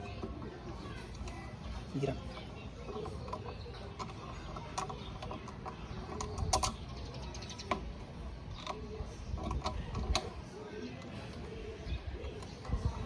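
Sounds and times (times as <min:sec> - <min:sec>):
low steady background noise: 0:00.0 - 0:13.0.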